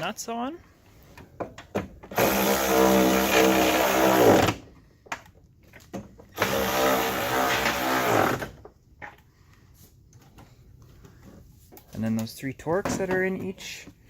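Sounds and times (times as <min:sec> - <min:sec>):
power drill running: 0:02.1 - 0:04.6, 0:06.4 - 0:08.6.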